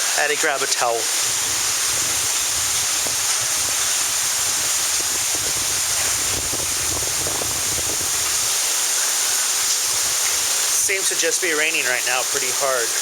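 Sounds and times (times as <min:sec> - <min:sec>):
heavy rain pouring: 0:00.0 - 0:13.0
wind rumbling on microphone: 0:01.1 - 0:08.7, 0:09.6 - 0:10.7.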